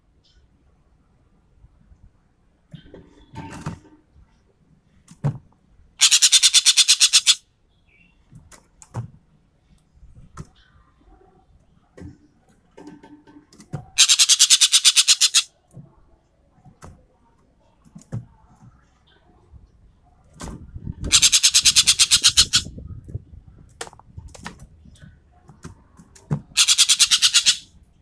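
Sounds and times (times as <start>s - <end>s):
magpie rattling call: 6.0s - 7.4s, 14.0s - 15.5s, 21.1s - 22.7s, 26.6s - 27.7s.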